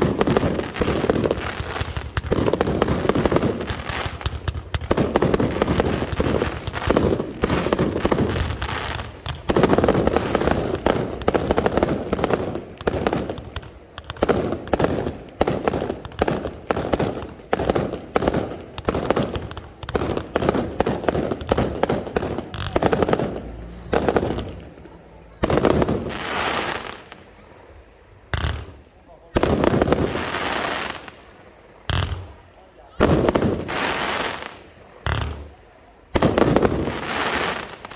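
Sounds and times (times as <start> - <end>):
fireworks bangs and crackling: 0.0 - 37.9.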